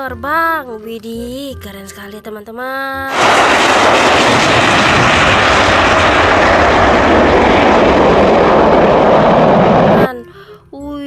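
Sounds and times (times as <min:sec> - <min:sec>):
airplane engine noise: 0:03.1 - 0:10.1.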